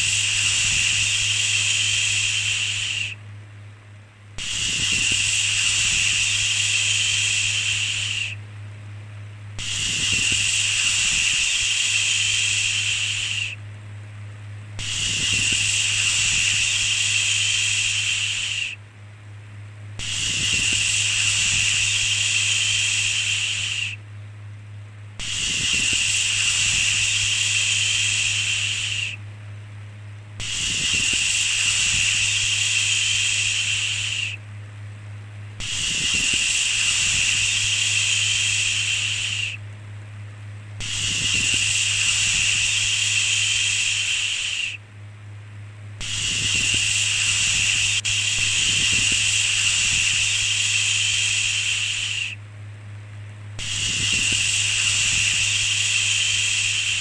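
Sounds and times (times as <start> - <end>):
steady low hum: 0.0 - 57.0
person shushing: 46.0 - 52.4.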